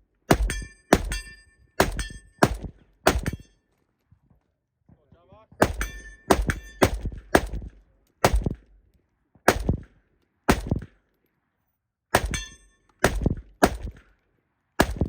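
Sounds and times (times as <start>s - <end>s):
rifle shots: 0.3s - 3.5s, 5.6s - 8.8s, 9.5s - 11.0s, 12.1s - 14.2s, 14.8s - 15.0s
short metallic ring: 0.4s - 2.4s, 3.2s - 3.8s, 5.8s - 6.9s, 12.3s - 12.9s.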